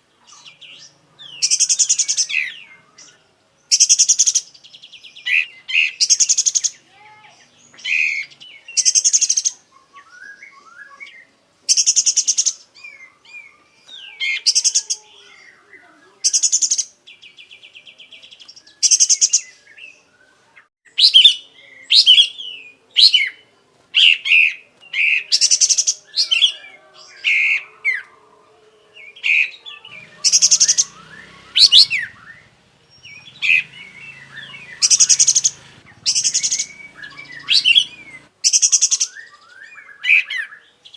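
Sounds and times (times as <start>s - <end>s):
bird singing harsh buzzing song: 0.0s - 40.9s
bird chirps and whistles: 29.3s - 40.5s.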